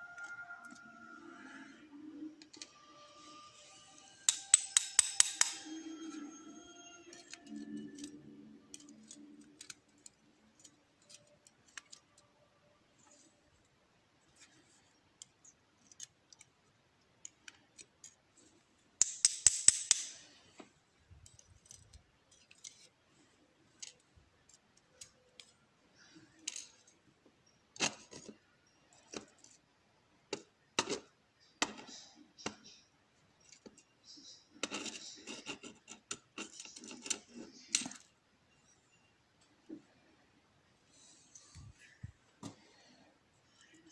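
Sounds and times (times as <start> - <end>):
small metal lock parts clicking: 4.2 - 6.3, 7.1 - 12.4, 15.2 - 18.2, 19.0 - 20.3, 21.2 - 23.0, 23.6 - 29.6, 33.4 - 38.2.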